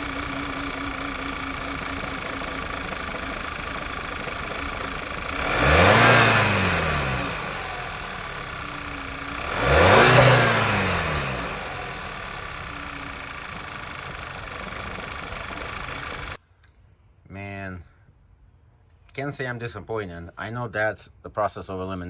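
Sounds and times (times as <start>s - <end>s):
car engine idling and revving: 0.0s - 16.4s.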